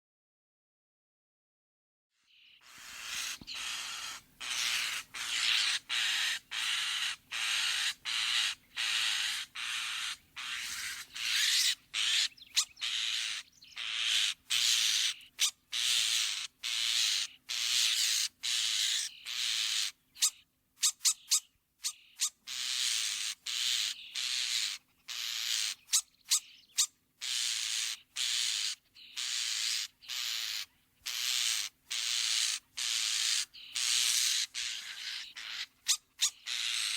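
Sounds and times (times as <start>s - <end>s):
starling harsh hissing rasps: 2.7s - 12.3s.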